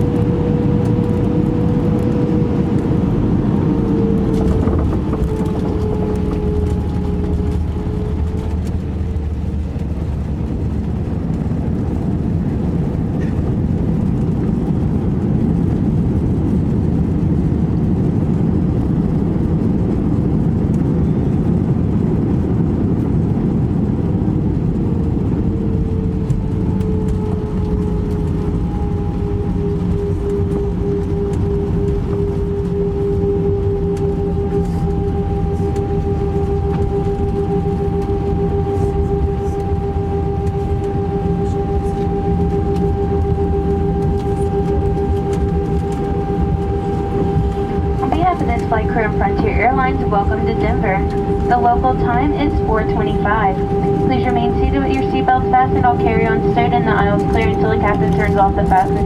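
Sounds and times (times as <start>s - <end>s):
airliner cabin airflow rush: 0.0s - 59.0s
faint jet engine whine: 0.0s - 59.0s.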